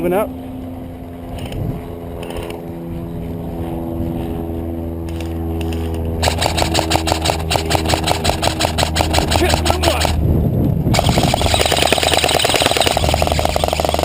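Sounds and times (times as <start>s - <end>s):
engine running: 0.0s - 14.0s
rapid regular clatter: 5.1s - 10.2s.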